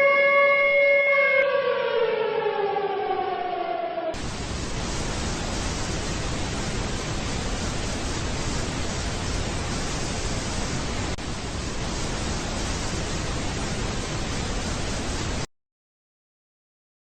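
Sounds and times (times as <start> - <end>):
broadcast static hiss: 4.2 - 15.5.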